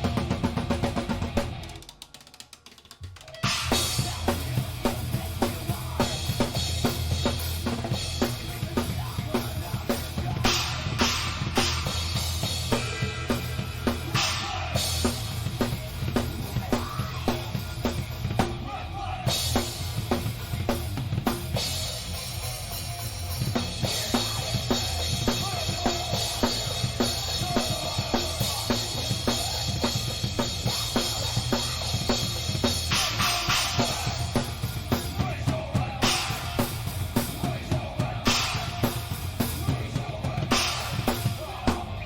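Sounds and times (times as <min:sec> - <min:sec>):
live rock band playing: 0:00.0 - 0:01.9, 0:03.4 - 0:18.6, 0:19.3 - 0:42.0
bass drum and snare hits: 0:32.9 - 0:34.2, 0:38.2 - 0:42.0.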